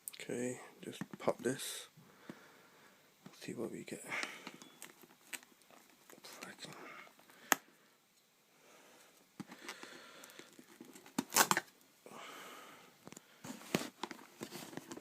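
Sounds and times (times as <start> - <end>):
plastic packaging clicks and crinkling: 4.2 - 7.7, 9.4 - 11.8, 13.0 - 15.0
packaging snapping: 9.5 - 11.7.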